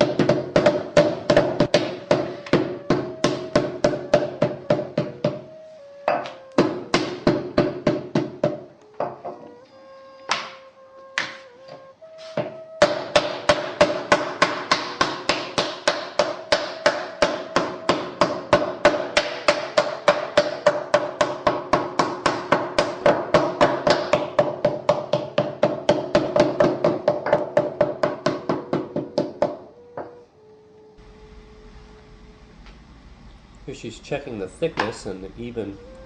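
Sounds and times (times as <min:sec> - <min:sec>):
wooden mallet beating clay: 0:00.0 - 0:09.5, 0:10.3 - 0:10.6, 0:11.2 - 0:11.8, 0:12.4 - 0:30.1
background music: 0:00.0 - 0:33.0, 0:33.6 - 0:36.0.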